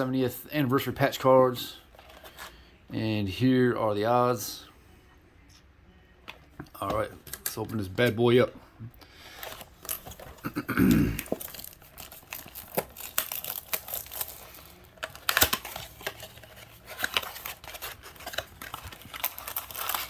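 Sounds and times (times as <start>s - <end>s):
plastic wrap and cardboard tearing: 9.2s - 20.0s.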